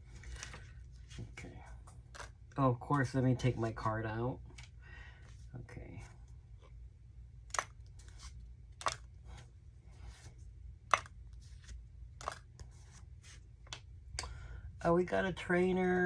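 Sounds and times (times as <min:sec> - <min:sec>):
trading cards flipped: 0:00.2 - 0:01.2, 0:01.9 - 0:02.4, 0:07.5 - 0:09.2, 0:10.9 - 0:13.8.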